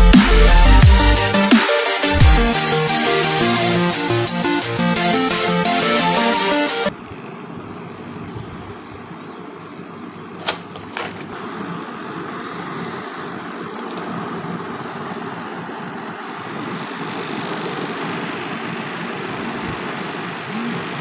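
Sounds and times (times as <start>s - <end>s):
machine running: 0.0s - 6.9s.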